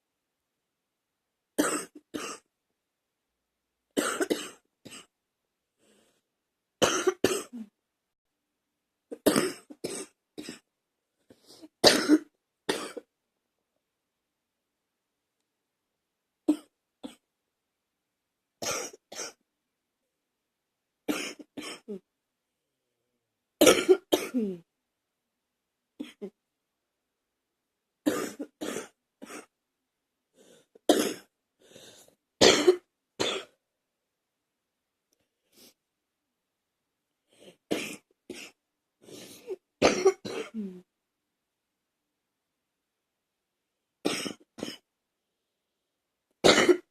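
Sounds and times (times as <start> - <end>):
person coughing: 1.6 - 2.4, 4.0 - 5.1, 6.8 - 7.7, 9.1 - 10.6, 11.8 - 13.1, 21.1 - 22.0, 23.6 - 24.6, 28.1 - 29.5, 30.9 - 31.3, 32.4 - 33.6, 39.2 - 40.9, 44.1 - 44.9, 46.4 - 46.9.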